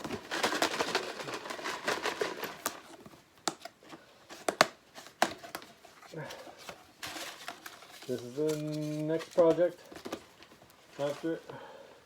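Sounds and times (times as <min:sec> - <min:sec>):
paper slips rustling in a box: 0:00.0 - 0:02.9.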